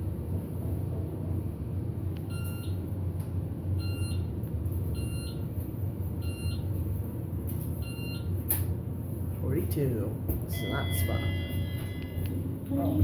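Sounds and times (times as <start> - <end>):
elevator low hum: 0.0 - 13.0
short electronic beeps: 10.5 - 12.3.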